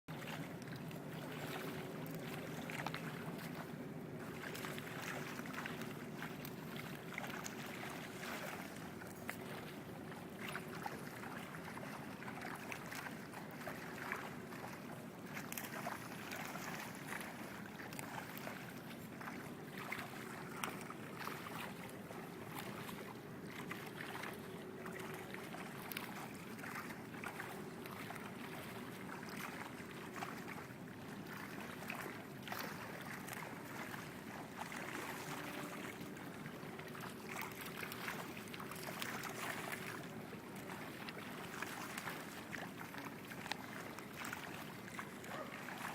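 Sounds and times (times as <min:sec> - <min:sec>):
faint steady hum: 0:00.1 - 0:45.9
fish splashing in water: 0:31.4 - 0:36.3.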